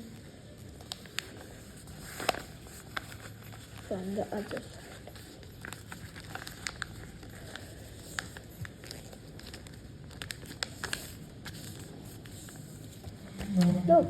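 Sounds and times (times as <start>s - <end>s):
paper rustling and crackling: 0.0s - 14.0s.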